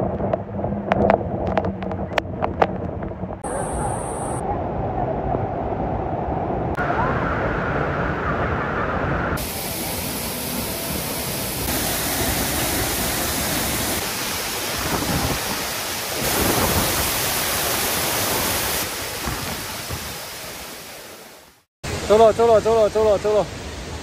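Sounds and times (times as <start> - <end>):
waterfall rushing water: 6.8 - 24.0.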